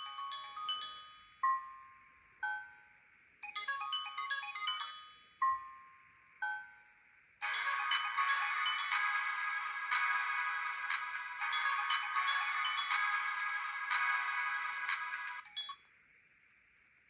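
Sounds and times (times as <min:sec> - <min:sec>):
mobile phone ringtone: 0:07.4 - 0:15.8.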